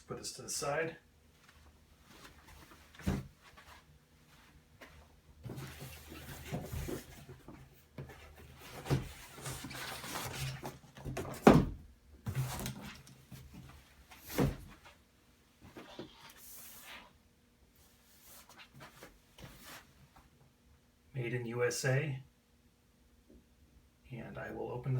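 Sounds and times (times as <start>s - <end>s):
cardboard boxes sliding and rustling: 5.4s - 11.4s, 12.3s - 14.8s.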